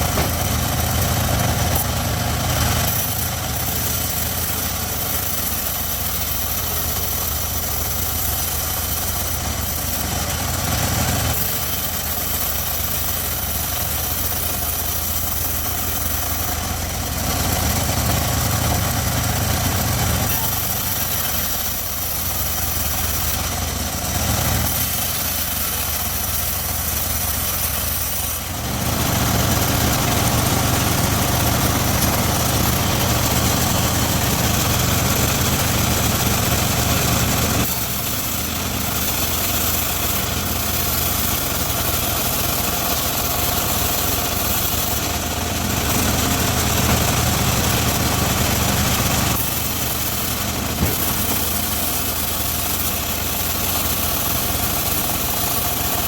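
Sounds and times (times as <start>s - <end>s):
circular sawmill cutting wood: 0.0s - 56.0s.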